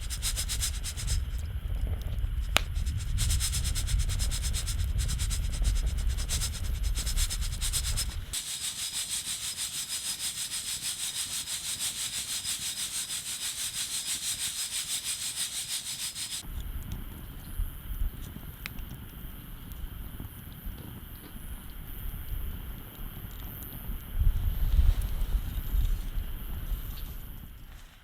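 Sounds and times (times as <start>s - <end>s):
coffee beans rattling in roaster: 0.0s - 16.5s.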